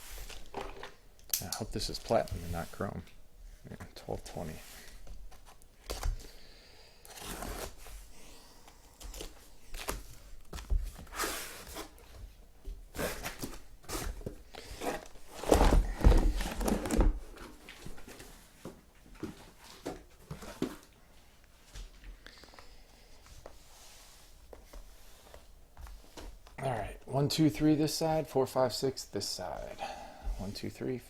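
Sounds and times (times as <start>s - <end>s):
cardboard rustling and crinkling: 9.1s - 21.0s.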